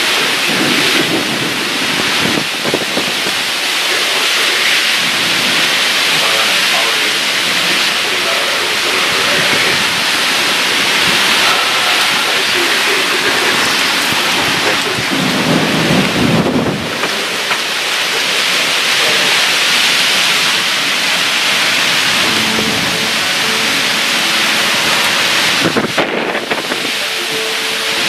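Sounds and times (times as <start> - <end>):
heavy rain pouring: 0.0 - 28.0
thunder rumble: 0.0 - 28.0.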